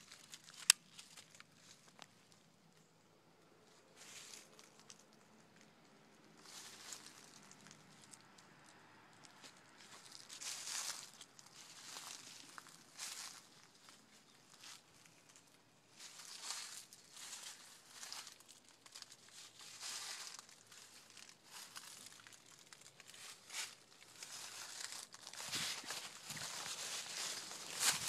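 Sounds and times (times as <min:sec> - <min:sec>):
footsteps through dry leaves: 0:03.8 - 0:05.2, 0:06.4 - 0:08.7, 0:09.3 - 0:28.0.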